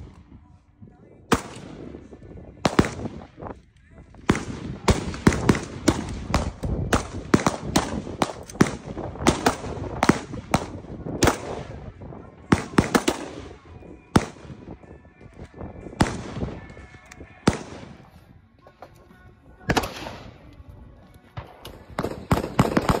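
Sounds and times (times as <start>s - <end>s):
gunshots: 1.3s - 3.4s, 4.2s - 11.8s, 12.5s - 14.7s, 16.0s - 18.2s, 19.7s - 20.4s, 21.4s - 23.0s.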